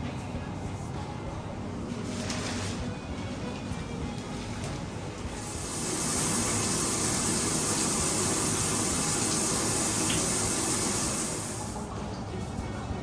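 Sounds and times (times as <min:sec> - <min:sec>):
water running from tap: 0:04.4 - 0:11.9.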